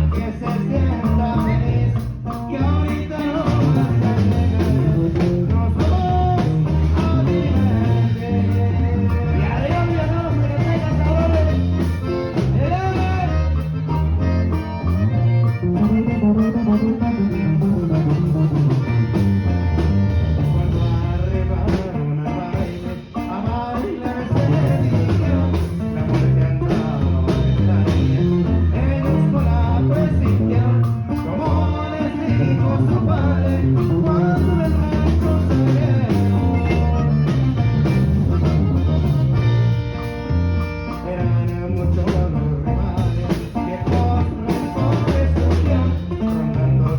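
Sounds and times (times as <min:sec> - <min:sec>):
band music with singer: 0:00.0 - 0:46.9.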